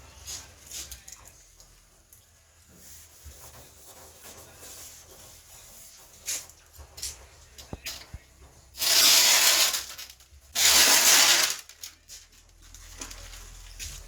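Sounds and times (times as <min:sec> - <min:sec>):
sandpaper rubbing: 0:08.8 - 0:10.0, 0:10.6 - 0:11.7.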